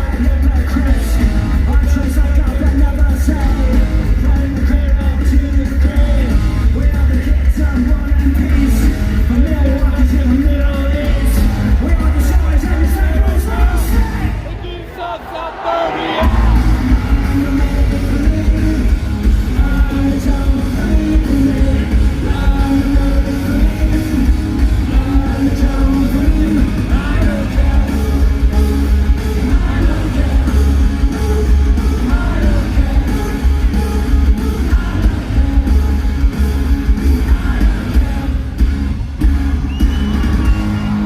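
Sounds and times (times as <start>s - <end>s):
live rock band playing: 0.0s - 15.0s, 16.2s - 41.0s.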